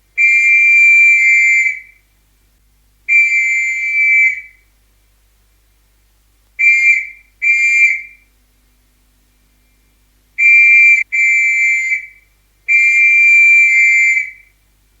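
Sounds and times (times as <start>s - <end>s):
police whistle blasts: 0.2s - 2.0s, 3.1s - 4.6s, 6.6s - 8.3s, 10.4s - 14.6s.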